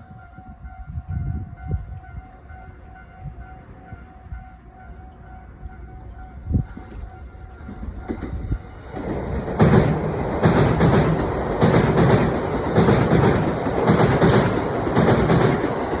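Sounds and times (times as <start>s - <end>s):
tram running past: 0.0s - 16.0s
wheels clacking over rail joints: 6.8s - 16.0s.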